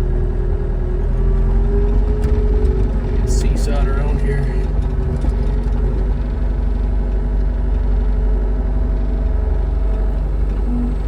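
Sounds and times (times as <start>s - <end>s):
farm machine engine idling: 2.8s - 8.2s.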